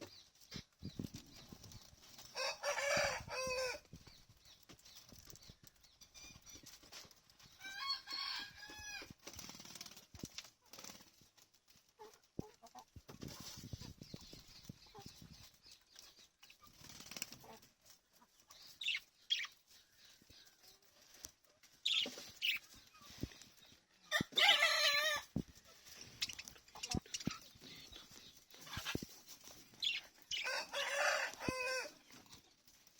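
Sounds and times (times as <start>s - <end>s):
small birds chirping: 0.0s - 32.9s
birds calling: 21.8s - 32.0s.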